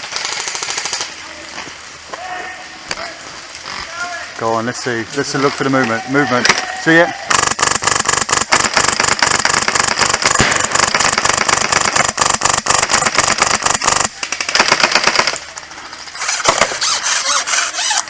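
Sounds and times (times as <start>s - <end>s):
airsoft gun full-auto burst: 0.0s - 1.1s, 7.3s - 15.4s.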